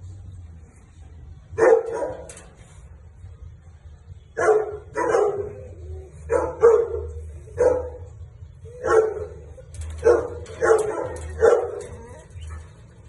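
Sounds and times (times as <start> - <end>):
dog barking: 1.6 - 2.4, 4.4 - 12.8.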